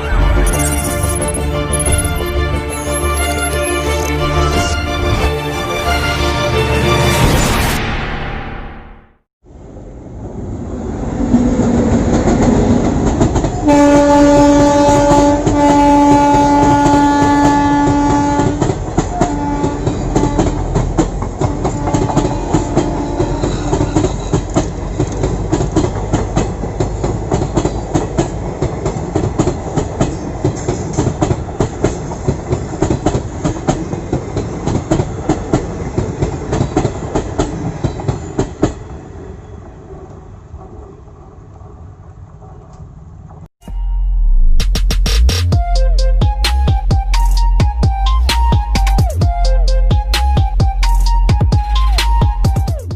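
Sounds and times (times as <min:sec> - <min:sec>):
locomotive horn: 0:13.6 - 0:24.2
train wheels clacking over rail joints: 0:16.4 - 0:38.8.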